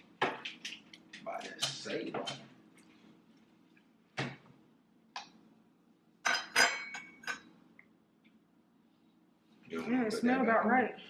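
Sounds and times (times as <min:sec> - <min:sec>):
metal utensils clinking: 0:06.2 - 0:07.5.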